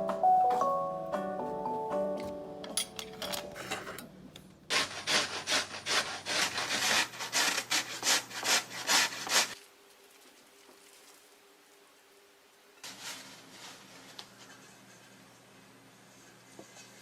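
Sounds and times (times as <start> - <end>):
potato rasping on grater: 4.7 - 9.6.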